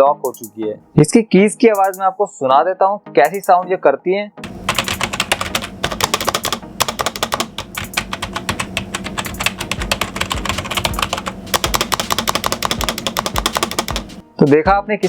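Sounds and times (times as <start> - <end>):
rapid typing on keyboard: 4.4 - 14.2.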